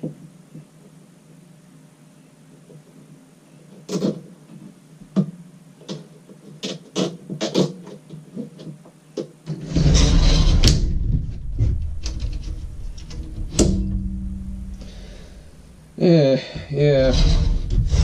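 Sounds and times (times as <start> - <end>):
rumbling scrape: 9.5 - 15.9, 16.6 - 18.0.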